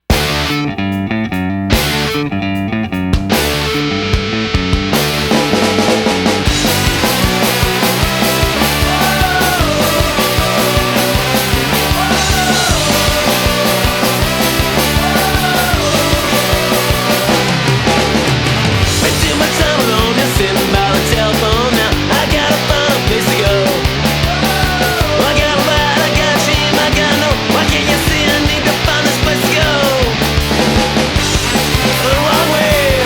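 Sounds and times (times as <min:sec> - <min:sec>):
punk rock music: 0:00.0 - 0:33.0.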